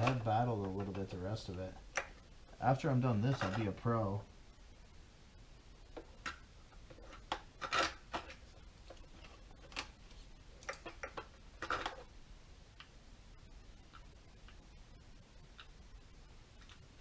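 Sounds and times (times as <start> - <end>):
parts clattering: 2.9 - 3.8, 5.9 - 10.0, 10.6 - 12.1.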